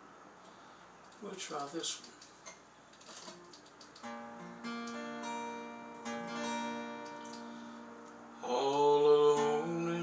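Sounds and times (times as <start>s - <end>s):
acoustic guitar strumming chords: 4.0s - 10.0s.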